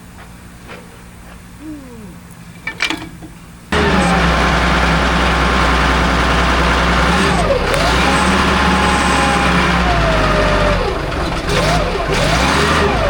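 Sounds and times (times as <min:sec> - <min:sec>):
engine running: 0:01.5 - 0:13.0.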